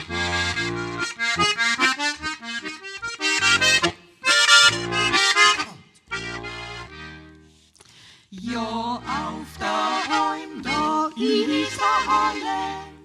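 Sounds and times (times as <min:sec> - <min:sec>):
accordion melody: 0:00.0 - 0:07.6, 0:08.4 - 0:13.0
bass notes: 0:00.0 - 0:07.6.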